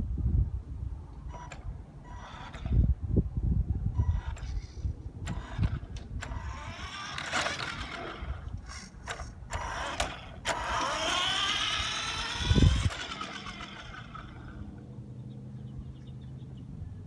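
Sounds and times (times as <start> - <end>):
toy truck motor whining: 1.3 - 2.9, 3.9 - 14.7.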